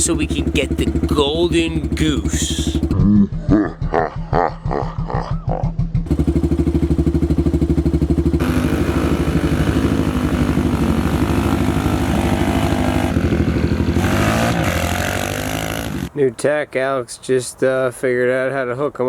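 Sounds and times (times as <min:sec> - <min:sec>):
small motorbike engines idling: 0:00.0 - 0:03.0, 0:06.1 - 0:16.1.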